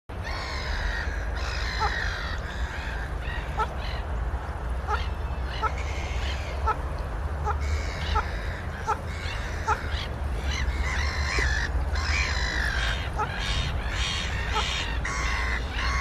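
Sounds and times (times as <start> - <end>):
waterfowl harsh calls: 0.2 - 4.0, 4.8 - 6.8, 7.4 - 16.0.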